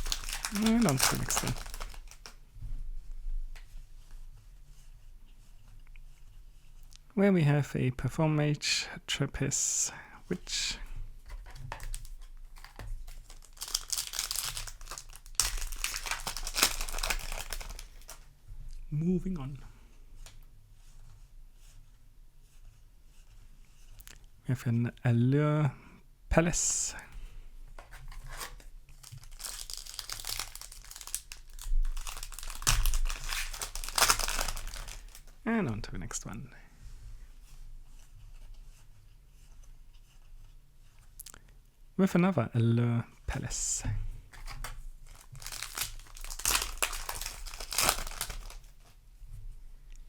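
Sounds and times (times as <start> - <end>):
foil wrapper crinkling: 0.0 - 2.4, 11.7 - 18.2, 28.1 - 35.4, 44.3 - 48.9.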